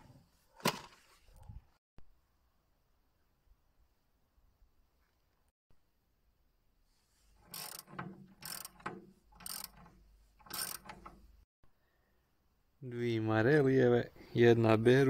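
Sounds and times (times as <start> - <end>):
mechanical rattling clatters: 7.4 - 11.4.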